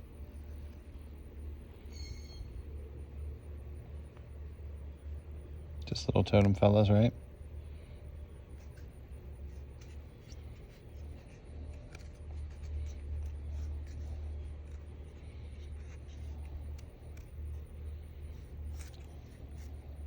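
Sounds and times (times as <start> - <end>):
stone clicking and scratching: 8.6 - 20.0.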